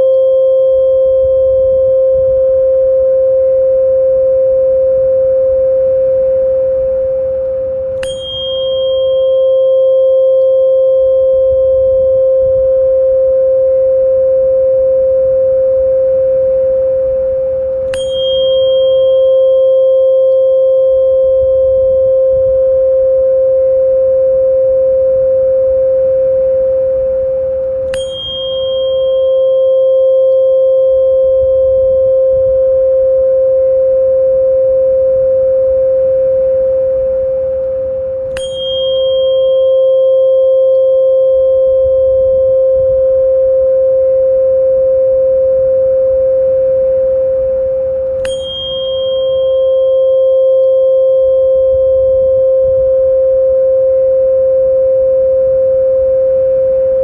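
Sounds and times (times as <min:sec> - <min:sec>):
click with high ring: 0:00.0 - 0:01.6, 0:07.9 - 0:12.5, 0:17.7 - 0:22.5, 0:27.6 - 0:32.8, 0:37.6 - 0:43.3, 0:47.9 - 0:54.2
steady pure tone: 0:00.0 - 0:57.0.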